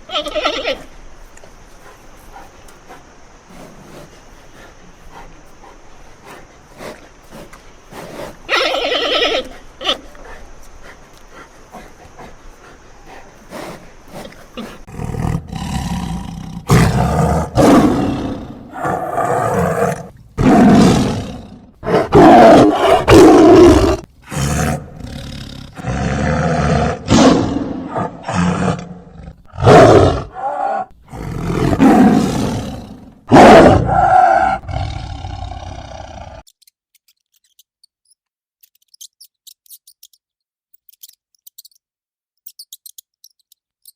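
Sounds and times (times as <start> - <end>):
lion roaring: 13.6 - 36.4.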